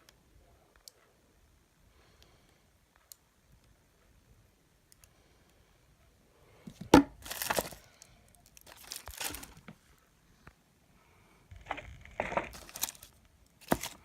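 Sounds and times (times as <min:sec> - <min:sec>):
packaging rustling and tearing: 0:07.2 - 0:09.7, 0:11.5 - 0:14.0.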